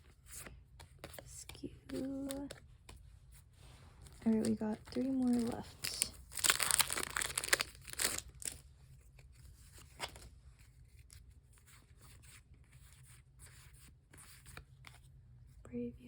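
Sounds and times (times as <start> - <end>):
trading cards rustling and clicking: 0.0 - 3.1, 4.0 - 15.2
foil wrapper crinkling and tearing: 4.2 - 8.6.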